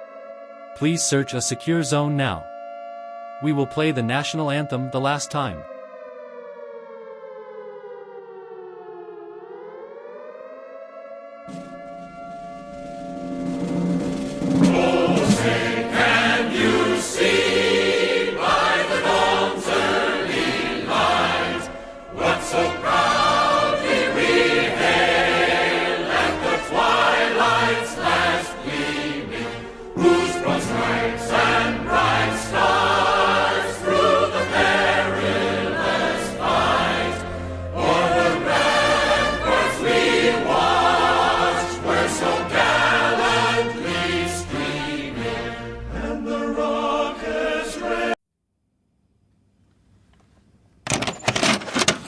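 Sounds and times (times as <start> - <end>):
low accompaniment: 11.5 - 47.4
choir singing an anthem: 13.5 - 48.2.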